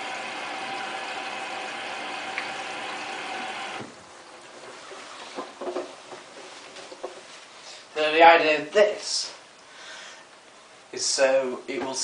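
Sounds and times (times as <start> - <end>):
washing machine humming: 0.0 - 7.4.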